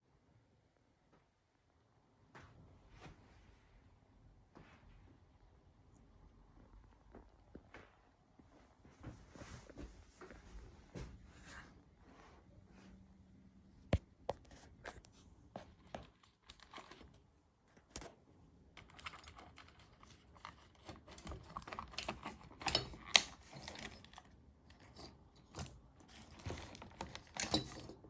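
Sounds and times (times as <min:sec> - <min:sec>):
scraping and rustling: 0:14.3 - 0:18.2, 0:18.8 - 0:28.0.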